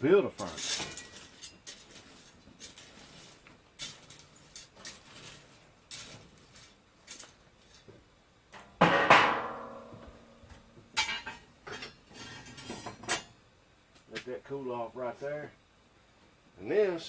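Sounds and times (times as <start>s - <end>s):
loud ringing metallic clang: 8.8s - 10.4s.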